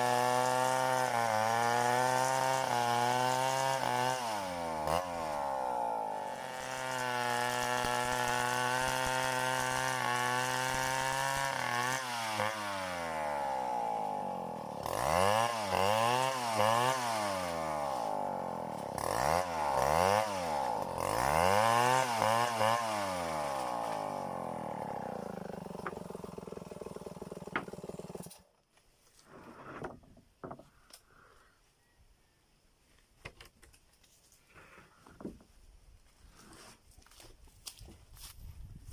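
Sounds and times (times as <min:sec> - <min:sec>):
chainsaw revving: 0:00.0 - 0:28.5.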